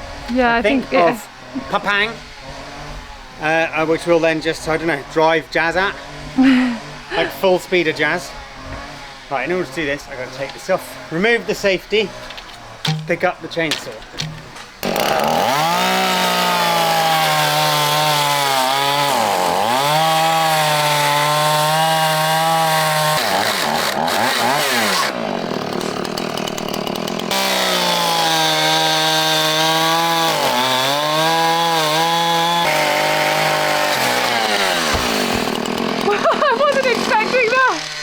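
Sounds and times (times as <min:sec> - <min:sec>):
chainsaw cutting wood: 0:01.0 - 0:04.2, 0:05.8 - 0:38.0.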